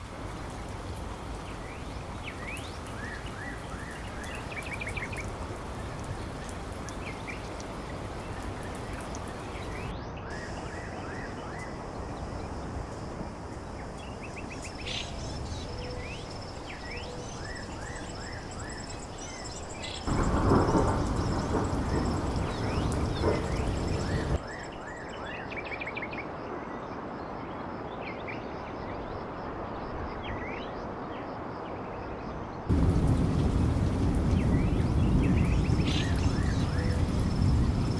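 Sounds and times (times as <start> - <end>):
small birds chirping: 0.9 - 25.8, 32.7 - 37.9
low rumbling noise: 32.7 - 37.9.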